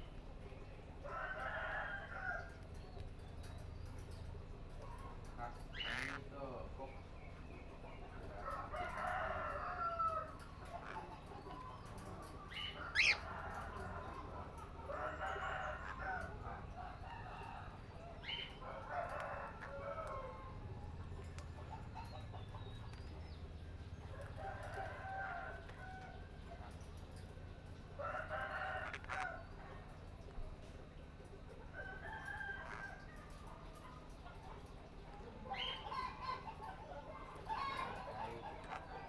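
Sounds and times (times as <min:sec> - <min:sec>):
long bird calls: 0:12.4 - 0:13.3.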